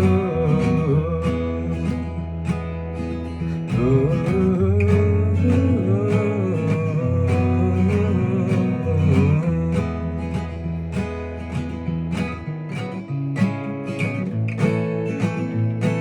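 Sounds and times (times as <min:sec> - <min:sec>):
bass line: 0:00.0 - 0:12.1
acoustic guitar strumming: 0:00.0 - 0:16.0.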